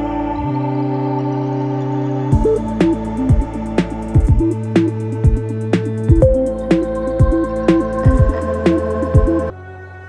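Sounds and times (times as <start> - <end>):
held synth chords: 0.0 - 9.6
beat with bass drop: 2.3 - 9.5.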